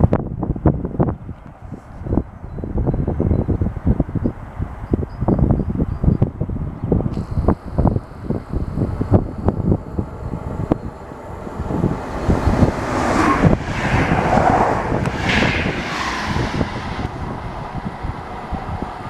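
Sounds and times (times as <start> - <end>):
wind buffeting microphone: 0.0 - 19.0
train passing at speed: 7.6 - 19.0.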